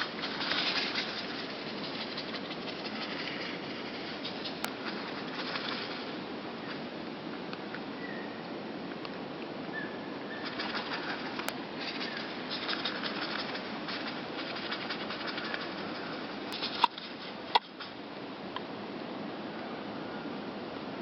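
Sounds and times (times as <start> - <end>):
birds fluttering wings: 0.0 - 6.9, 10.3 - 18.0.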